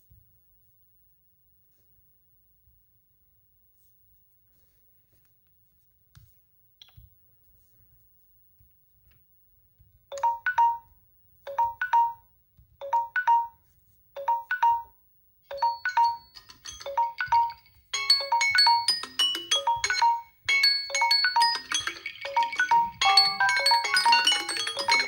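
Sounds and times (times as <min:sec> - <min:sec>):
phone alarm tone melody: 0:15.5 - 0:25.0.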